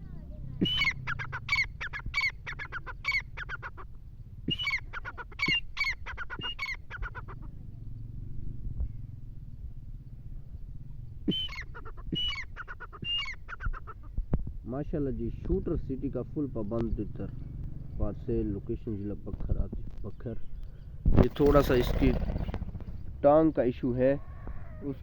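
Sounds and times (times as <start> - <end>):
francolin calling: 0.6 - 7.5, 11.2 - 14.1.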